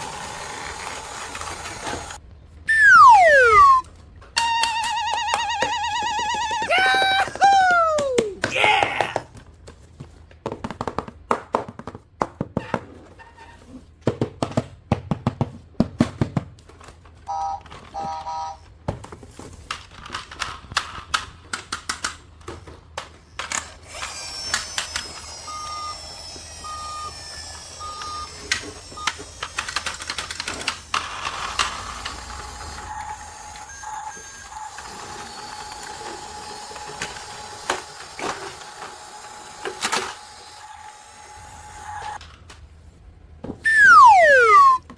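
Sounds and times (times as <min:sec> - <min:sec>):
electronic toy sounds: 0:02.7 - 0:03.8, 0:04.4 - 0:08.4, 0:43.7 - 0:44.8
short beeps: 0:02.7 - 0:03.8, 0:43.7 - 0:44.8
plastic toys clattering: 0:19.1 - 0:23.8.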